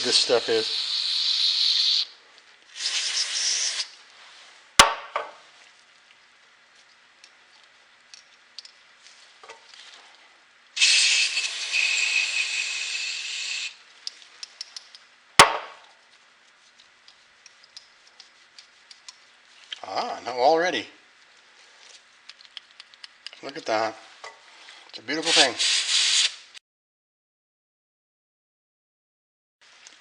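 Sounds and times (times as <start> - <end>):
aerosol spray hiss: 0.0 - 2.1, 2.8 - 3.9, 10.8 - 13.8, 25.2 - 26.5
sharp clicks: 22.2 - 23.6.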